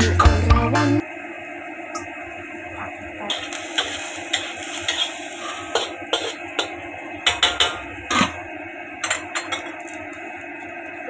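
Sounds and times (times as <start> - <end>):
metal utensils knocking on pan: 5.7 - 8.3.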